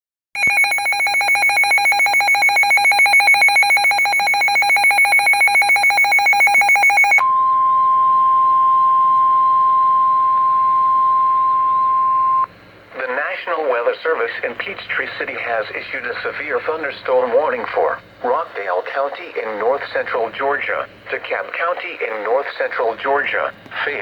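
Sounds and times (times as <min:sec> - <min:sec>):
pulsing electronic alarm beep: 0:00.4 - 0:08.6
steady alarm tone: 0:00.4 - 0:12.5.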